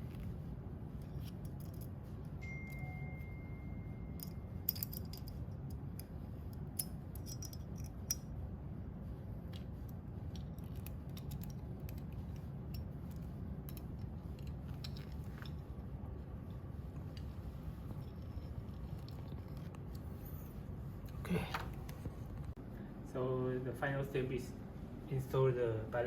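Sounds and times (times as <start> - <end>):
steady low hum: 0.0 - 26.0
faint high steady tone: 2.4 - 5.1
metallic clicks of screws and tool: 4.2 - 8.2, 13.7 - 15.2.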